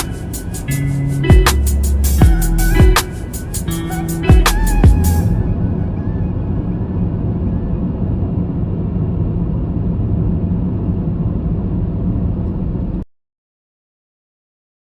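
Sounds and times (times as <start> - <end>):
car driving on road: 5.2 - 13.0.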